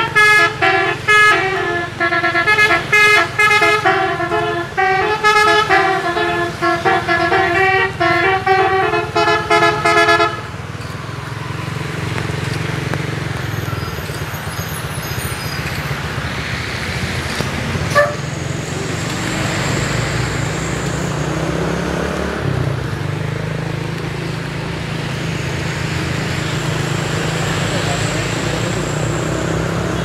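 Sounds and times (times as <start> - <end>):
heavy vehicle engines droning: 0.0 - 30.0
tyre and road noise: 0.0 - 30.0.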